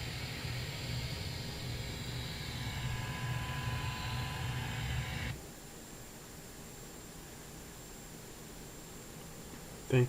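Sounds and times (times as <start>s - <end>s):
heat pump humming: 0.0s - 5.4s
faint hiss: 5.4s - 10.0s.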